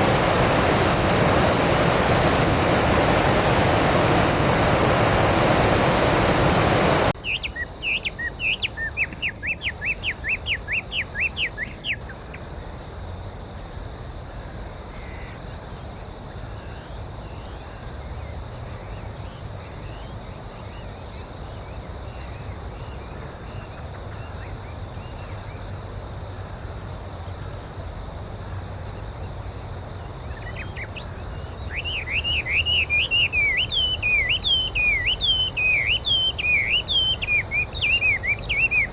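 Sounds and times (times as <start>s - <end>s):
rushing water: 0.0s - 7.2s
bird singing whistled notes: 7.2s - 12.1s, 30.3s - 38.9s.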